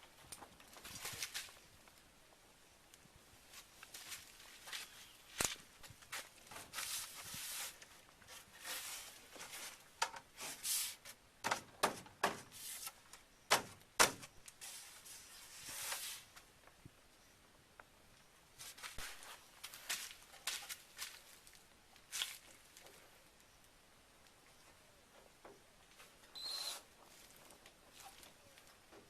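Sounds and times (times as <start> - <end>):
knocks and scrapes of handled materials: 4.0 - 16.5.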